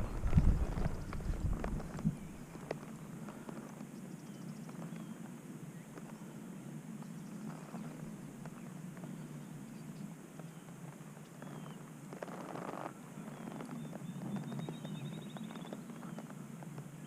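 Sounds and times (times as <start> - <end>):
low background rumble: 0.0 - 3.5
horse hooves walking: 0.0 - 5.2.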